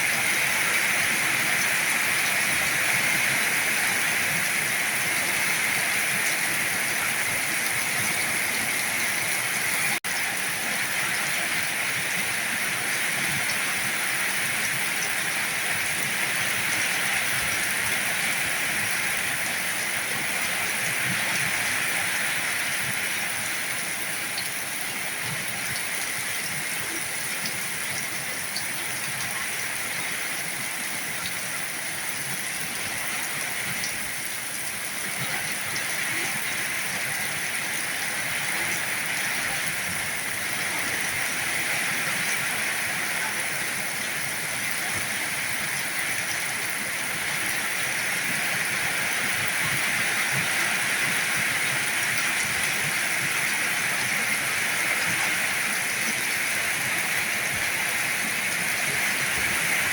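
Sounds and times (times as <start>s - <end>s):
heavy rain falling: 0.0s - 59.9s.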